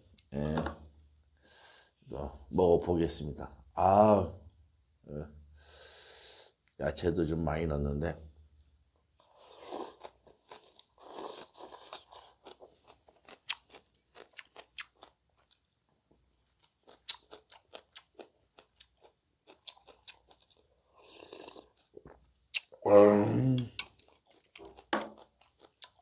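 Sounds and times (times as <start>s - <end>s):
crunching and chewing: 9.2s - 22.8s, 23.8s - 26.0s.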